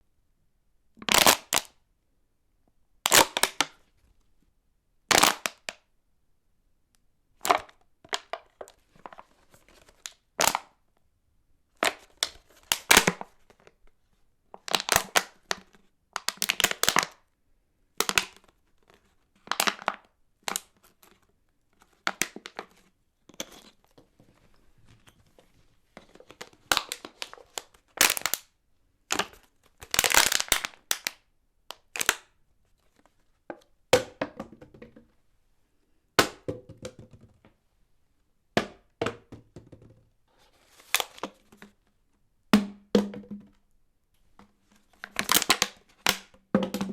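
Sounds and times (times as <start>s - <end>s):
plastic water bottle crushing: 14.6s - 17.1s, 26.0s - 28.4s, 29.1s - 32.2s, 45.0s - 46.9s.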